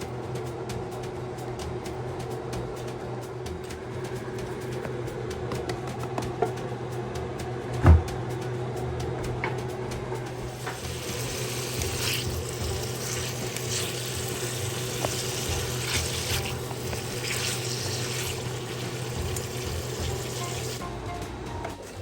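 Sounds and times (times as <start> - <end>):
water running from a tap: 10.5 - 20.8.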